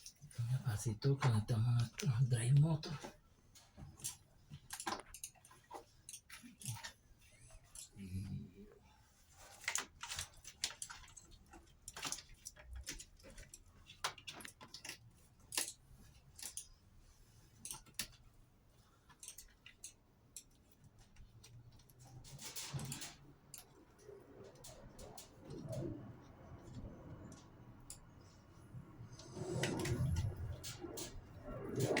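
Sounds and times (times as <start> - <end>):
clicks and knocks of metal tools: 2.9 - 8.0, 9.4 - 16.8, 17.5 - 28.4.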